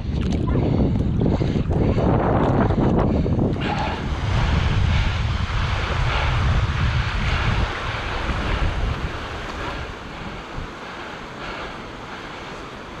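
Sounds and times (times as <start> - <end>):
wind buffeting microphone: 0.0 - 13.0
small waves washing: 3.2 - 13.0.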